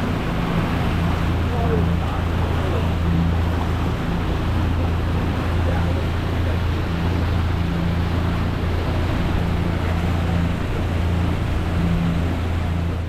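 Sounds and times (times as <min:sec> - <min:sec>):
ferry engine droning: 0:00.0 - 0:13.0
water noise: 0:00.0 - 0:13.0.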